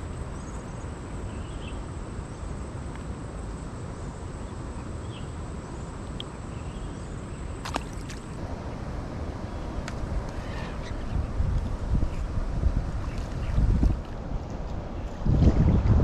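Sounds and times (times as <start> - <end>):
stream rushing: 7.5 - 15.1.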